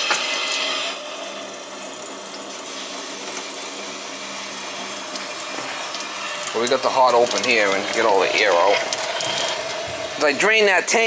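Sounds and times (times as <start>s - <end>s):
water rushing through pipes: 0.0s - 11.0s.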